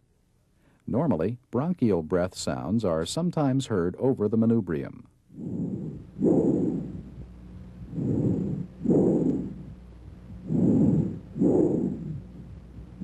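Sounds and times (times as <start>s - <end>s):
faint steady hum: 0.0s - 13.0s
breath sounds through stethoscope: 5.3s - 13.0s.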